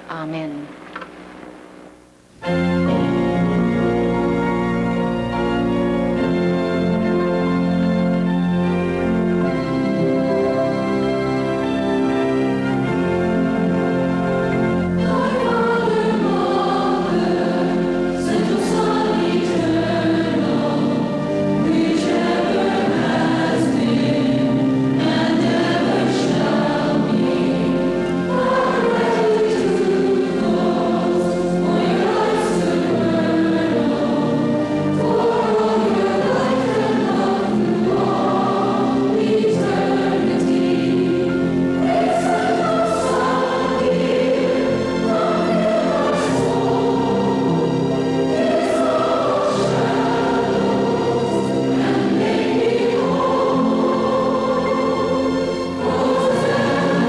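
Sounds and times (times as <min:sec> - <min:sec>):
low accompaniment: 0:00.0 - 0:11.4
group singing a hymn: 0:10.7 - 0:57.0.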